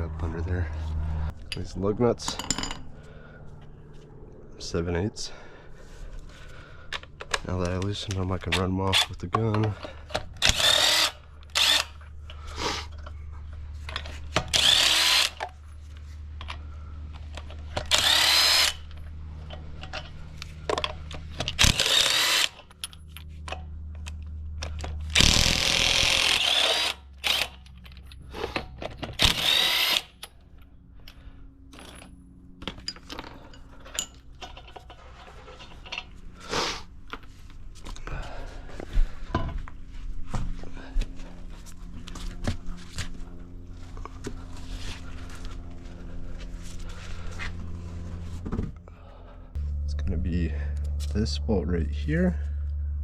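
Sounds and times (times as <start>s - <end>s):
impact gun whirring: 10.3s - 12.0s, 14.3s - 15.5s, 17.5s - 19.0s, 20.7s - 22.8s, 25.0s - 27.7s, 29.0s - 30.3s.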